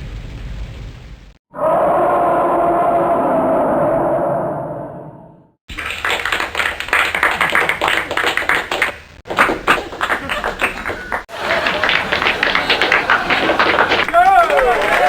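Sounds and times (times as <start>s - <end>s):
rapid sharp taps: 6.3s - 14.3s.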